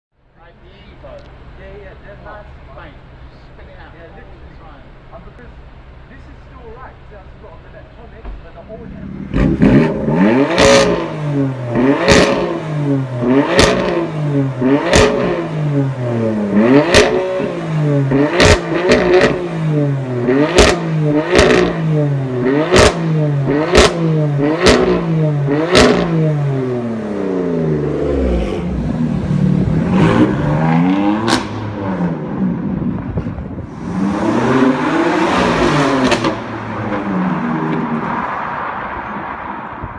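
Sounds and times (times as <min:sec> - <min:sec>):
car engine revving: 0:08.6 - 0:39.7.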